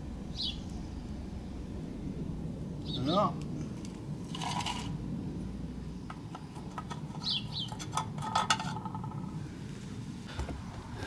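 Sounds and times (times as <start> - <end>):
tool clinking against metal pot: 6.6 - 9.2.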